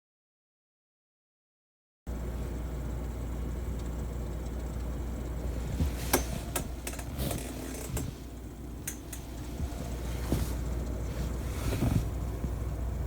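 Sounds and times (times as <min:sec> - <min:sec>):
computer fan humming: 0:02.1 - 0:13.0
sharp clicks and knocks: 0:05.8 - 0:08.2, 0:08.8 - 0:10.9.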